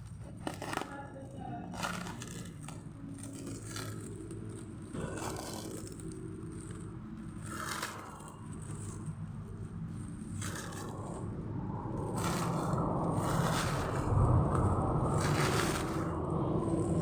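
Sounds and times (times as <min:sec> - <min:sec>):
packaging being handled: 0:00.0 - 0:11.2
steady low hum: 0:00.0 - 0:17.0.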